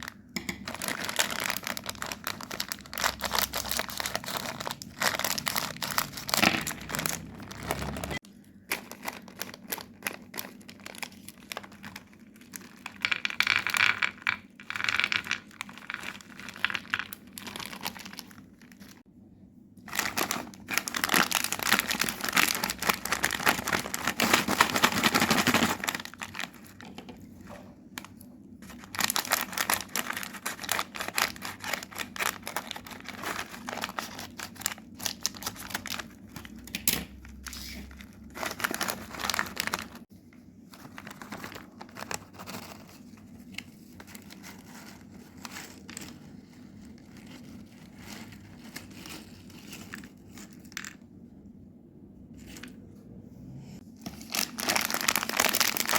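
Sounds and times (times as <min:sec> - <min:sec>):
wrapper crinkling and tearing: 0:00.0 - 0:19.1, 0:19.8 - 0:27.1, 0:28.0 - 0:40.1, 0:40.7 - 0:50.8, 0:54.0 - 0:55.9.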